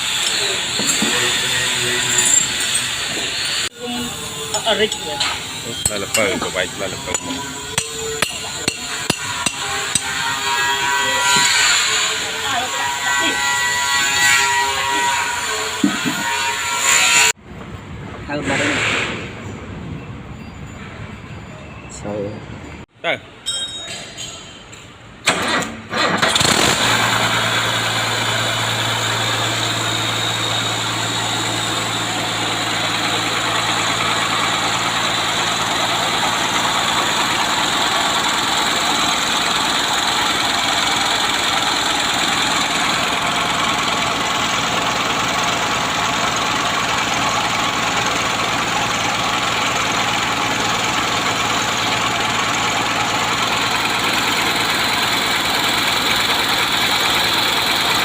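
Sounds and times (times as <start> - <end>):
heavy machine engine running: 0.0 - 13.8, 25.3 - 58.0.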